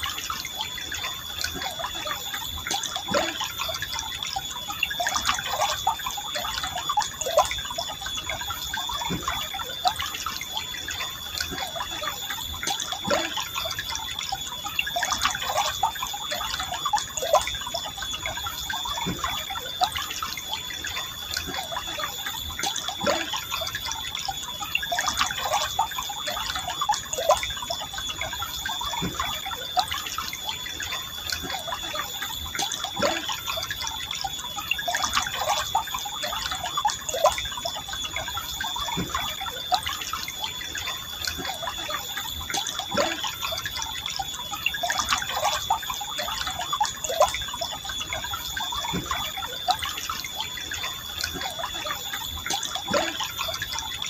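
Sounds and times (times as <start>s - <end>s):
river gurgling and bubbling: 0.0s - 54.0s.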